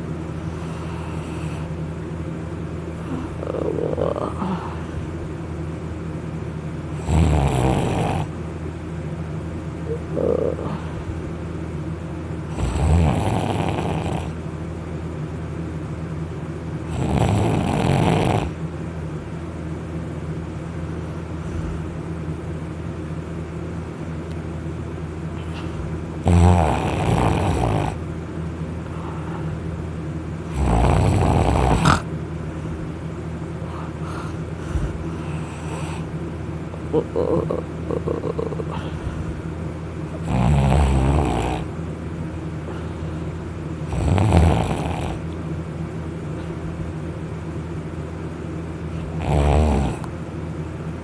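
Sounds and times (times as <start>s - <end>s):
person snoring loudly: 3.1s - 4.7s, 7.0s - 8.3s, 10.1s - 10.9s, 12.5s - 14.4s, 16.9s - 18.6s, 26.2s - 28.0s, 30.5s - 32.1s, 37.0s - 39.0s, 40.2s - 41.7s, 43.9s - 45.2s, 49.1s - 50.1s.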